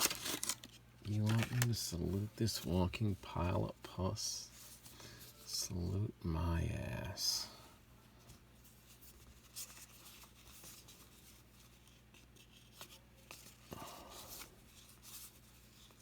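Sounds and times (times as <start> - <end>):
trading cards rustling and clicking: 0.0 - 2.8
low steady hum: 0.0 - 16.0.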